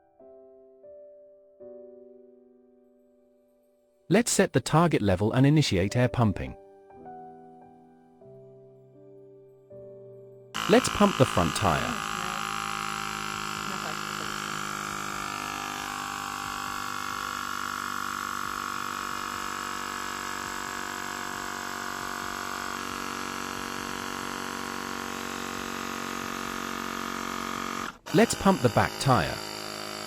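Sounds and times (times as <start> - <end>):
air pump compressor buzzing: 10.6 - 30.0.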